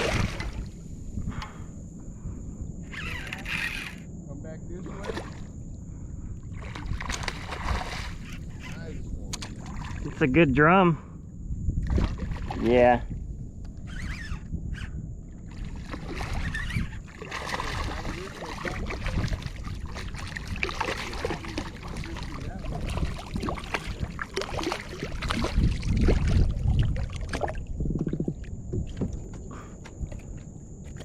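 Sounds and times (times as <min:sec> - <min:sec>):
water splashing and sloshing: 0:00.0 - 0:04.1, 0:04.7 - 0:10.4, 0:11.8 - 0:13.0, 0:15.3 - 0:31.0
short buzzing: 0:02.8 - 0:04.1
knocks and rustles on kayak: 0:06.6 - 0:10.1, 0:15.9 - 0:31.0.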